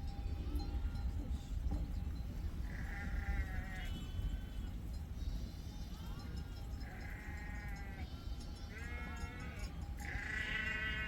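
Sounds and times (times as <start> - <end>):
sheep bleating: 2.7 - 4.1, 7.0 - 11.0.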